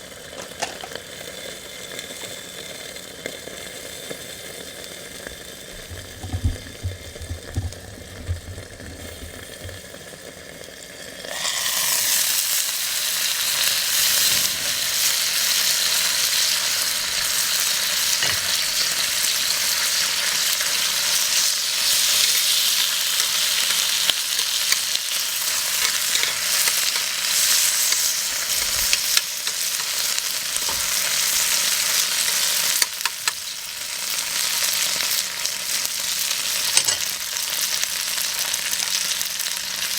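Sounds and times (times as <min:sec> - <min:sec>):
meat sizzling in a frying pan: 0:00.0 - 0:39.9
soft knocks: 0:05.8 - 0:09.8.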